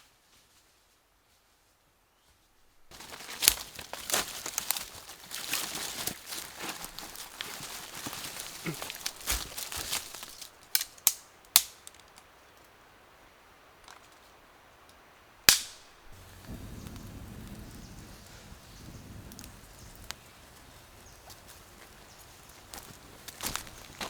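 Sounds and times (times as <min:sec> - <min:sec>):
dry material rustling and crackling: 0:02.9 - 0:11.1, 0:16.0 - 0:24.0
sharp snaps: 0:10.7 - 0:12.0, 0:15.5 - 0:24.0.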